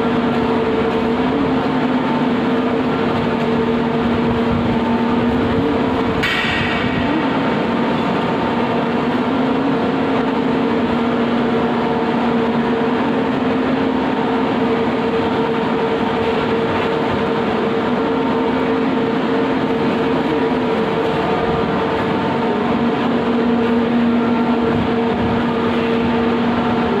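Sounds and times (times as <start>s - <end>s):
pulverizer machine grinding: 0.0s - 27.0s.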